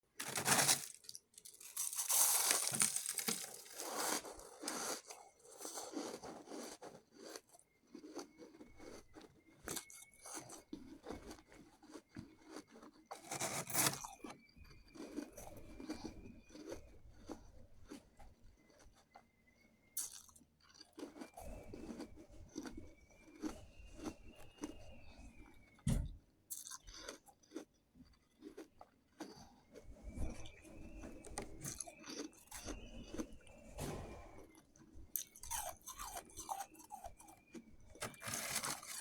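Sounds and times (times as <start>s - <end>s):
ice crunching in mouth: 0.2s - 10.6s, 11.2s - 14.3s, 34.6s - 39.0s.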